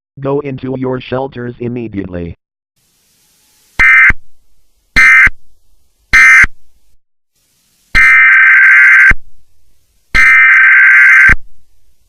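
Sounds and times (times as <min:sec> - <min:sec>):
buzzing digital data bursts: 0:08.0 - 0:09.2, 0:10.2 - 0:11.4.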